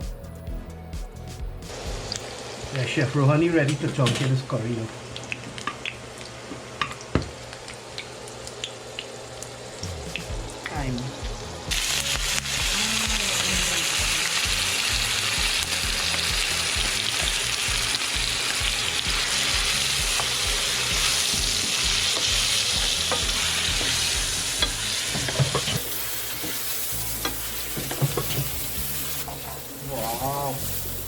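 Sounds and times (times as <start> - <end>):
paste sizzling in hot oil: 11.7 - 31.0.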